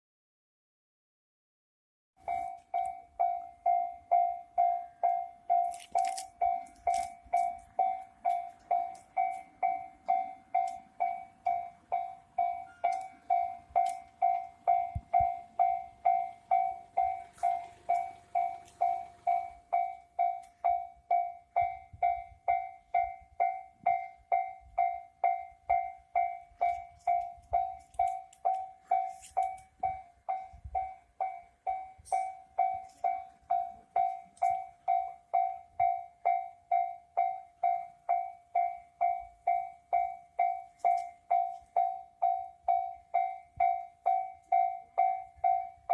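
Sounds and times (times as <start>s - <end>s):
level crossing alarm ringing: 2.2s - 45.9s.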